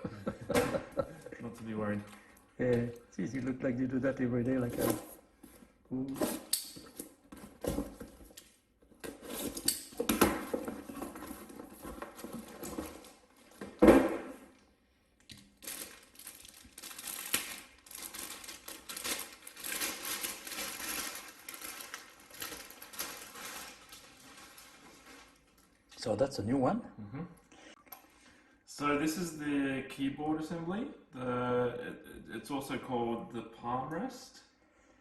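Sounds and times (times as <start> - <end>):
packaging crinkling and tearing: 15.4 - 25.8.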